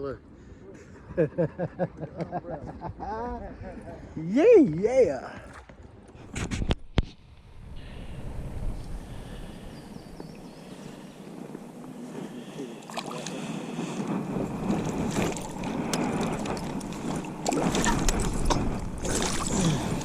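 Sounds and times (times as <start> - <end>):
water splashing: 12.3 - 14.0, 14.6 - 20.0.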